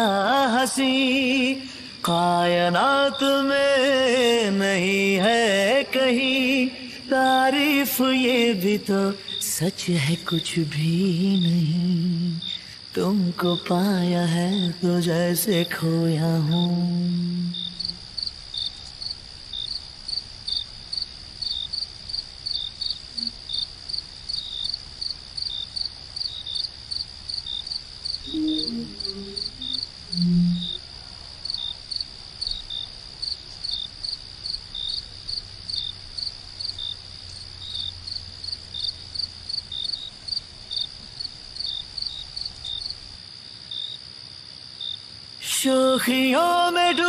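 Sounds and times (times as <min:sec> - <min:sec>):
crickets chirping: 0:00.0 - 0:47.0
brief low sounds: 0:28.3 - 0:30.8.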